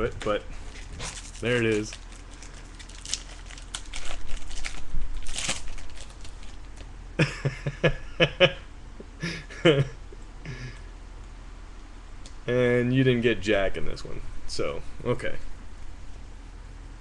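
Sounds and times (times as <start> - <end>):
wrapper crinkling: 0.0 - 6.9.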